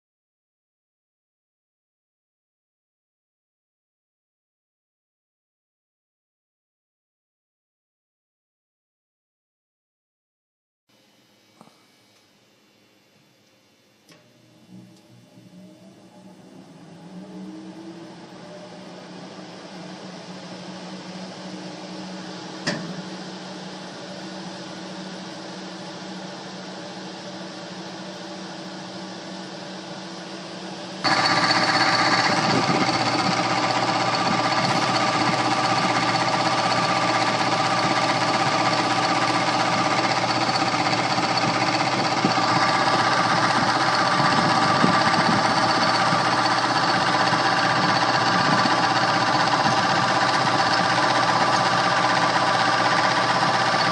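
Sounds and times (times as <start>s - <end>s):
click: 13.4s - 14.3s
harsh rattling whine of motor: 14.1s - 53.9s
electric blower motor humming: 29.2s - 53.9s.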